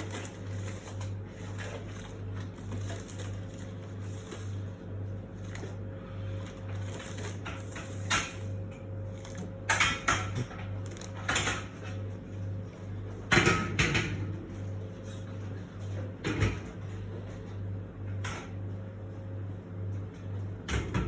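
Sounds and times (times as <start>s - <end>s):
kitchen items clattering: 0.0s - 11.8s.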